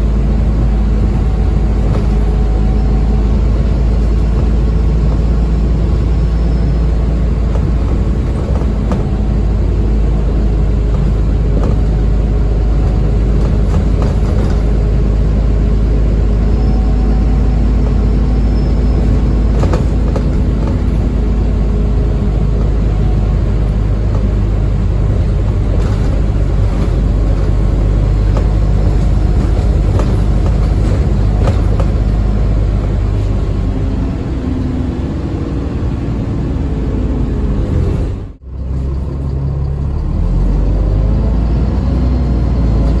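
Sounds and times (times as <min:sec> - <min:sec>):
bus engine droning: 0:00.0 - 0:43.0
sharp knocks and rattles: 0:00.5 - 0:33.6.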